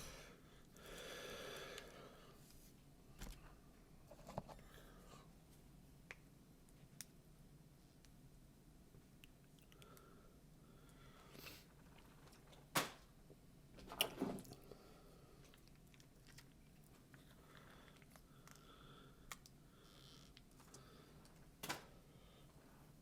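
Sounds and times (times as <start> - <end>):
chewing and biting: 15.5 - 17.2
crisp food crunching: 15.5 - 17.2.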